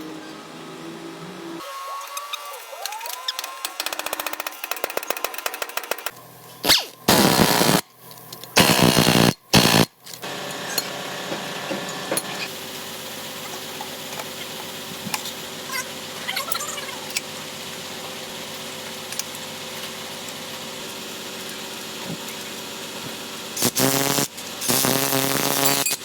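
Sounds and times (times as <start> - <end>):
power tool bursts: 6.6 - 7.8, 8.6 - 11.1, 23.6 - 26.0
steady hum: 7.0 - 7.9, 8.6 - 10.4.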